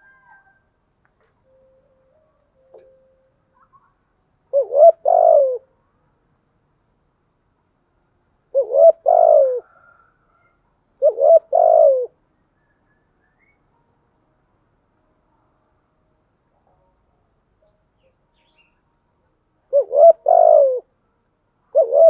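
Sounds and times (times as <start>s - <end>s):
dove cooing: 4.5s - 5.7s, 8.5s - 10.0s, 11.0s - 12.2s, 19.7s - 20.9s, 21.7s - 22.0s.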